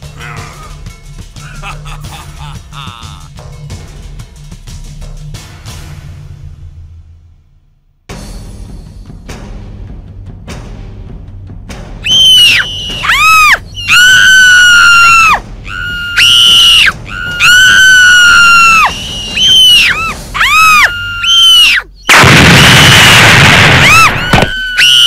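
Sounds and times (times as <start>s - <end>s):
high-pitched shrieks: 12.1s - 25.0s
loud noisy blast: 22.1s - 25.0s.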